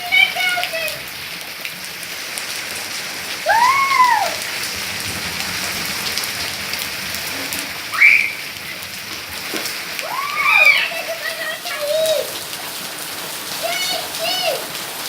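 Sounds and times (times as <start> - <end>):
heavy rain splashing: 0.0 - 15.0
short pitched calls: 7.3 - 8.8.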